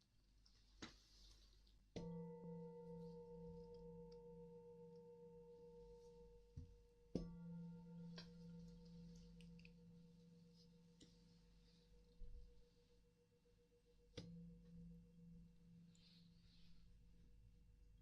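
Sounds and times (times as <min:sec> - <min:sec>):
singing bowl ringing: 0:02.0 - 0:10.8.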